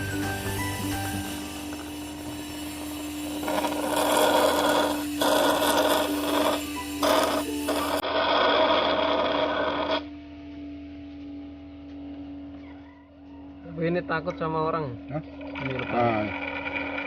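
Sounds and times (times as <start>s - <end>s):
suction pump humming: 0.0s - 10.2s, 13.7s - 17.0s.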